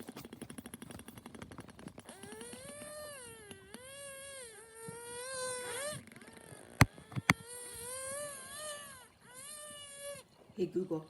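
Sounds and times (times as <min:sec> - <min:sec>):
sharp clicks: 0:06.9 - 0:07.4.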